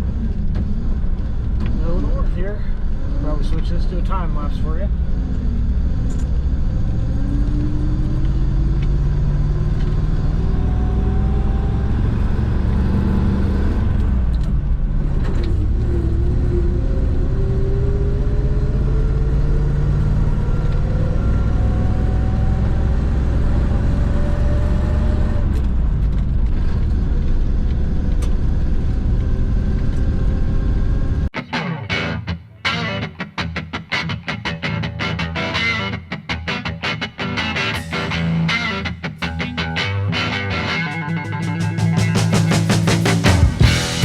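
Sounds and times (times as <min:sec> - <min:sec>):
truck engine under load: 0:04.9 - 0:31.3.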